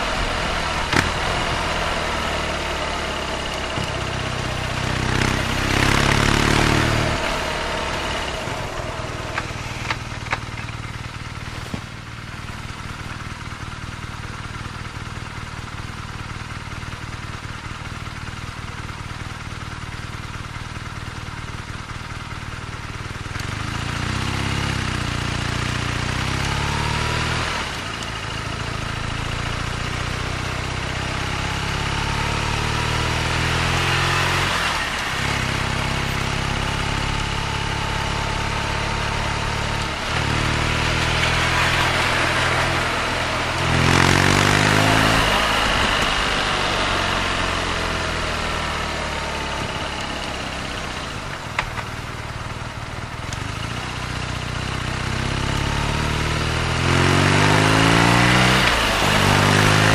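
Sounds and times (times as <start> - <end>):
motorcycle engine idling and revving: 0.0 - 59.9.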